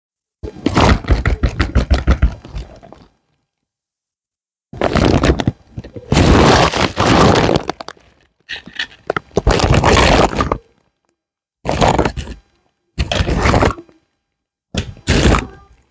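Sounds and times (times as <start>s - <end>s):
toy packaging being opened: 4.8s - 10.6s.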